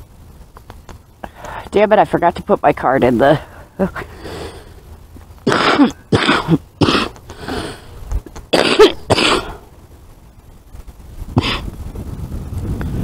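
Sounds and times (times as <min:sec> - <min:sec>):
person coughing: 0:05.5 - 0:07.7, 0:08.5 - 0:09.6, 0:11.4 - 0:11.6.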